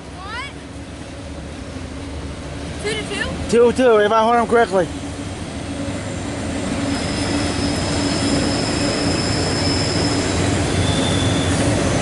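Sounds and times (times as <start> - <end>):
train wheels rumbling on rail: 0.0 - 12.0
high-pitched wheel squeal: 6.9 - 12.0.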